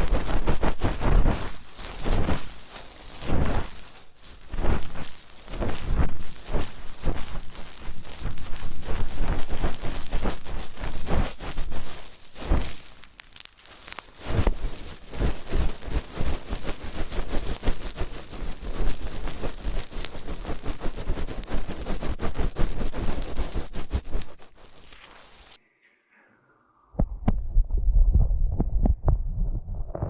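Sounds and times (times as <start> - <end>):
hands rubbing microphone: 0.0 - 25.6
low thuds: 27.0 - 30.0.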